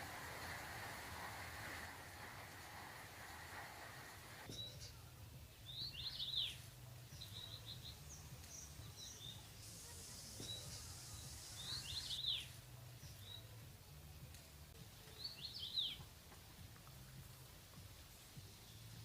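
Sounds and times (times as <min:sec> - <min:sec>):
bird chirps: 0:05.6 - 0:09.4, 0:11.4 - 0:13.4
songbird singing falling notes: 0:10.4 - 0:13.5, 0:15.1 - 0:16.1.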